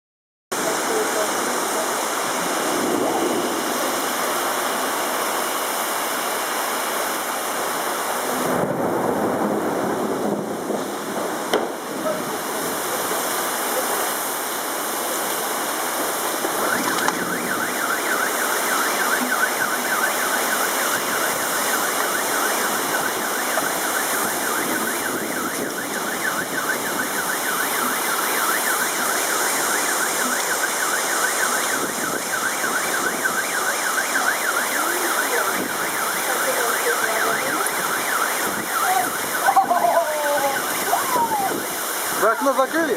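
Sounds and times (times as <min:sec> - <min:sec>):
heavy rain and wind: 0:00.5 - 0:42.9
car alarm warbling: 0:11.4 - 0:42.9.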